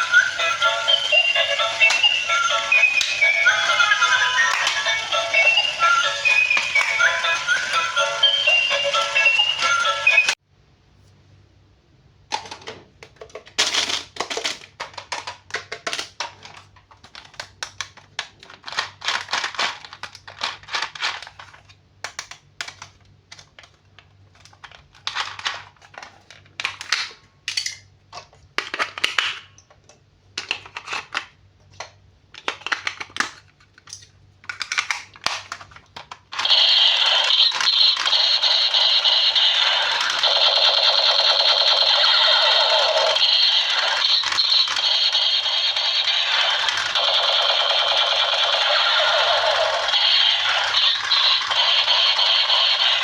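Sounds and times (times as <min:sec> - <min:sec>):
music: 0:00.0 - 0:10.4
packaging crinkling and rustling: 0:15.9 - 0:27.0.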